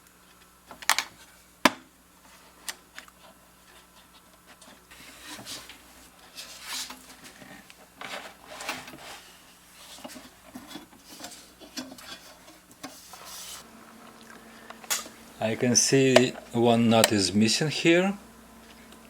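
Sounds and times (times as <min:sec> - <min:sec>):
hands handling wooden clock parts: 0:09.8 - 0:17.3.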